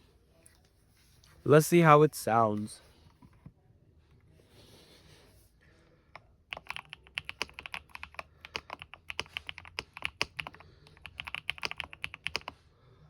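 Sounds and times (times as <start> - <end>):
mechanical keyboard typing: 6.5 - 12.6.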